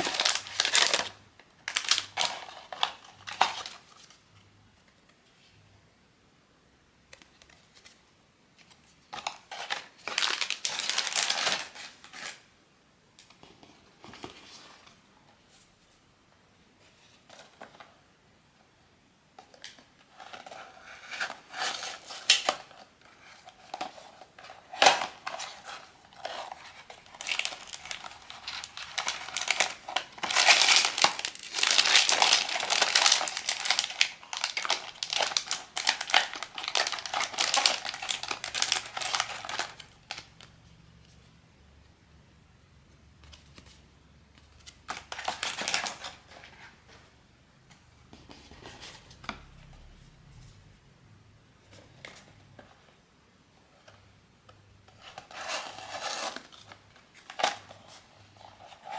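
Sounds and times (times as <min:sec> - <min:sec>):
packaging tearing: 0:00.0 - 0:02.9, 0:09.6 - 0:12.4, 0:26.2 - 0:40.3
packaging crinkling: 0:00.0 - 0:04.1, 0:09.2 - 0:12.4, 0:23.5 - 0:40.5, 0:44.6 - 0:46.5.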